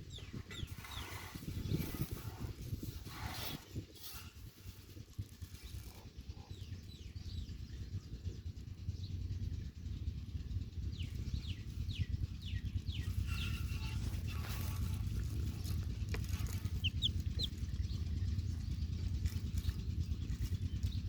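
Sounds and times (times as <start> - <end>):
baby chicks cheeping: 0.0 - 3.5, 10.8 - 21.0
steady low rumble: 0.0 - 21.0.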